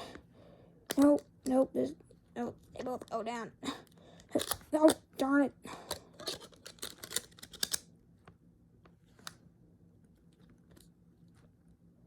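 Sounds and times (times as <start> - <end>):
plastic phone cover clicking and scraping: 4.2 - 5.0, 5.9 - 7.8.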